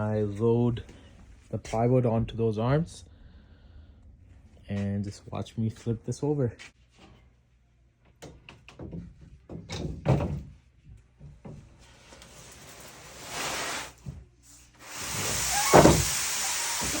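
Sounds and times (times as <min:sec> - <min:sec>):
sliding hiss of plywood: 0:12.3 - 0:17.0
heavy thud of plywood: 0:15.5 - 0:16.2.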